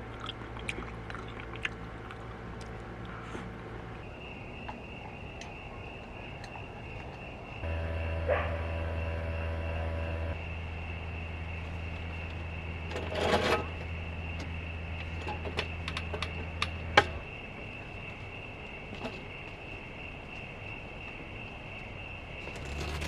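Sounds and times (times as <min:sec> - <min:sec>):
crickets chirping: 0:00.0 - 0:23.0
electric motor humming: 0:07.6 - 0:10.4.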